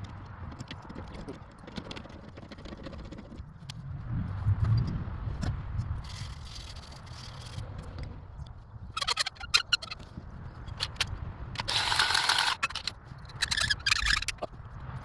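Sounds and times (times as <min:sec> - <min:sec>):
hard objects clicking and rattling: 0:00.0 - 0:03.5, 0:09.1 - 0:14.5.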